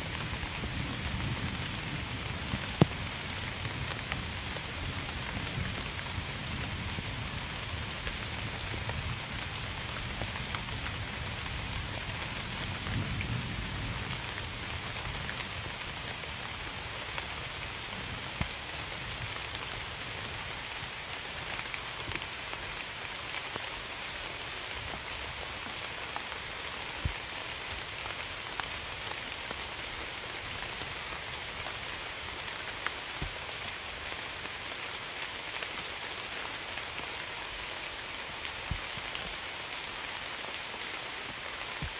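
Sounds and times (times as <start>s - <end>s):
steady rain hiss: 0.0s - 41.9s
raindrops ticking: 24.4s - 32.0s.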